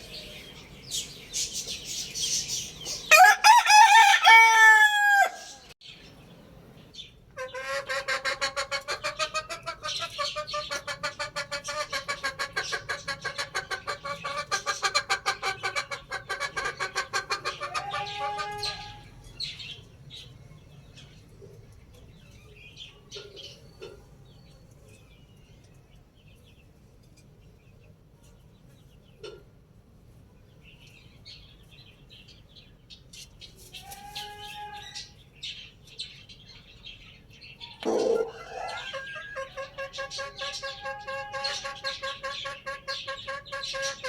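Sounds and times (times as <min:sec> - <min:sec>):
rooster crowing: 0:03.1 - 0:05.8, 0:17.7 - 0:19.1, 0:37.7 - 0:39.6
fowl clucking rapidly: 0:07.4 - 0:19.0, 0:37.8 - 0:44.0.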